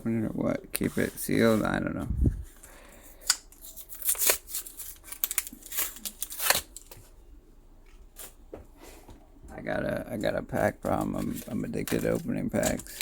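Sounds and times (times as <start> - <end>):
packaging crinkling and rustling: 3.5 - 7.2, 10.2 - 13.0.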